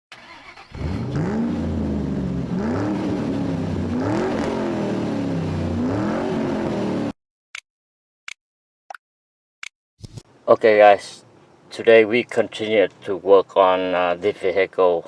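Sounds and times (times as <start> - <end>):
car engine revving: 0.2 - 7.1.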